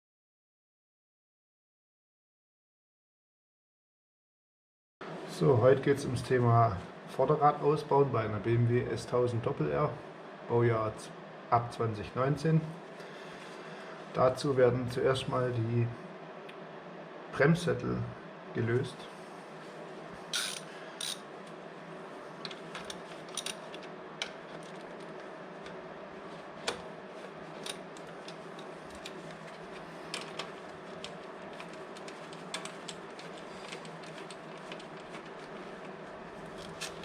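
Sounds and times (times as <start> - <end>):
hand tools clicking on metal: 20.4 - 21.2.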